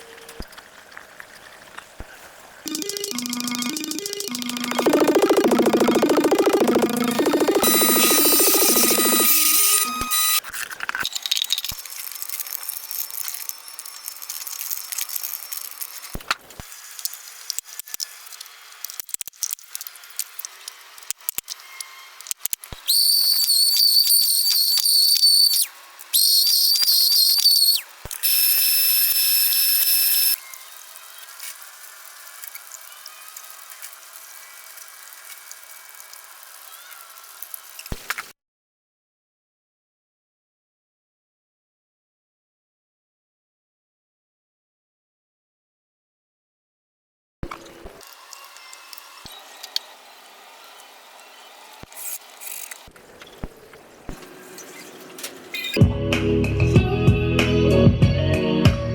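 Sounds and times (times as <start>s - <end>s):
high wavering whistle: 2.7s - 10.4s, 22.8s - 30.4s
hiss: 22.2s - 38.1s.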